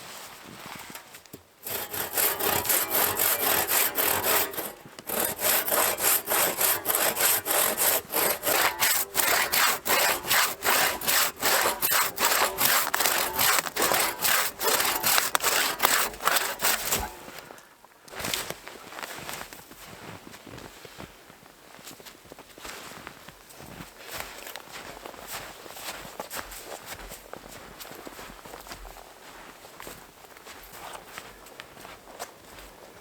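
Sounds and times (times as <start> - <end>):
hand saw cutting wood: 1.6 - 17.5.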